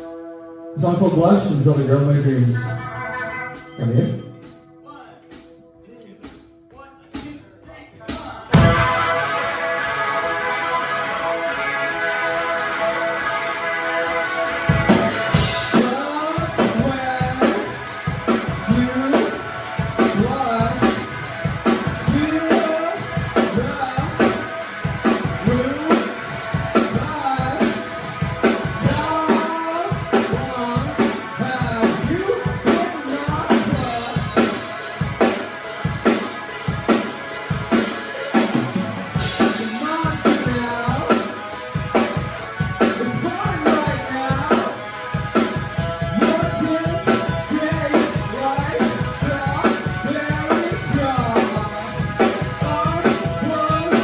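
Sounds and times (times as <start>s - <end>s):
guitar: 0.0s - 54.0s
drum kit beat: 0.8s - 54.0s
person singing: 14.0s - 17.9s, 18.6s - 34.6s, 39.2s - 41.7s, 42.8s - 45.1s, 46.0s - 54.0s.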